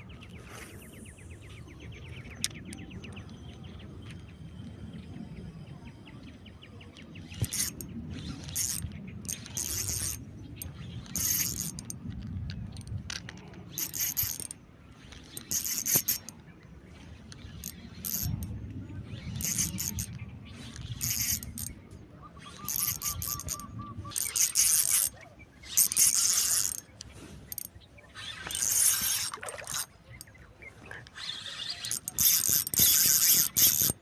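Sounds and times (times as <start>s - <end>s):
fishing reel ratchet clicks: 7.2s - 16.4s, 17.3s - 18.6s, 19.2s - 30.4s, 31.0s - 34.0s.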